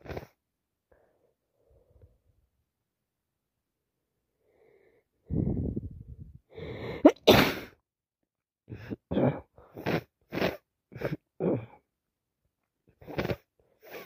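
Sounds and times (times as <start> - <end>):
person sneezing: 6.8 - 7.8
short sniffs: 13.1 - 14.0.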